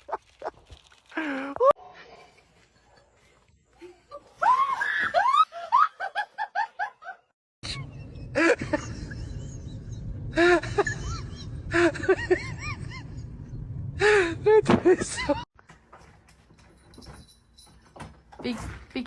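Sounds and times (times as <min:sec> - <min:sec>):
person laughing: 0:05.6 - 0:13.4.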